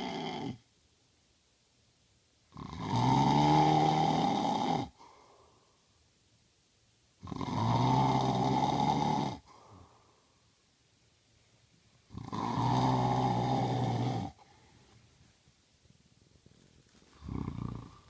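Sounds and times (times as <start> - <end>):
man snoring: 0.0 - 0.6, 2.5 - 5.0, 7.2 - 9.5, 12.1 - 14.4, 17.2 - 18.0.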